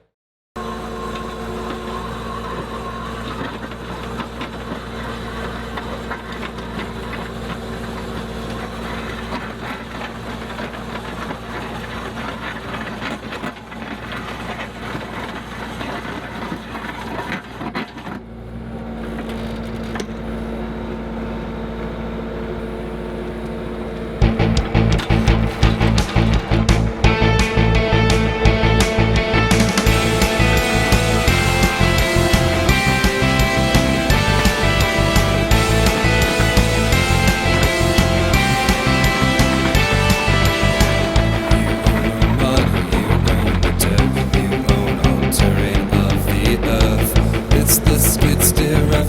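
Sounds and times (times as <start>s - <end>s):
skid steer engine running: 0.6s - 49.0s
auger rattling and knocking: 24.2s - 49.0s
music: 24.2s - 49.0s.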